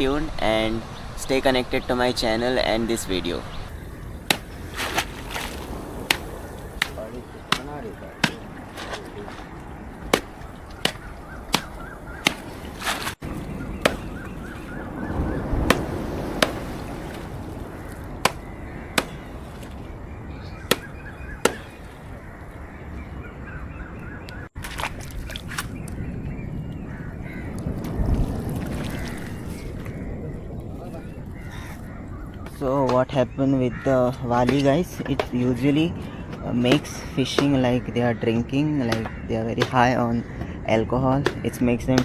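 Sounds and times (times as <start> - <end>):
roots being beaten: 4.2 - 9.0, 10.1 - 13.2, 13.8 - 14.1, 15.6 - 17.2, 18.2 - 19.2, 20.6 - 21.8.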